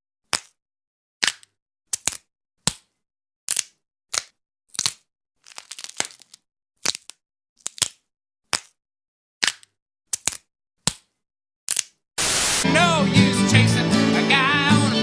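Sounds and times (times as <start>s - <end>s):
crackling: 12.2s - 12.7s.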